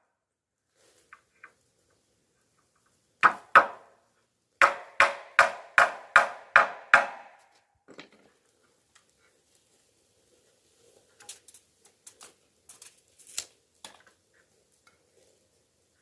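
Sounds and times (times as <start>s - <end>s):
hard strikes on wood: 3.2s - 3.9s, 4.6s - 7.5s.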